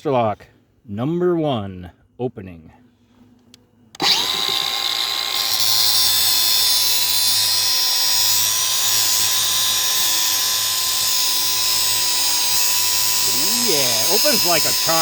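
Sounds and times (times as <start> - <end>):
power cutting tool whining: 4.0 - 15.0
grinding hiss cutting metal: 5.6 - 15.0.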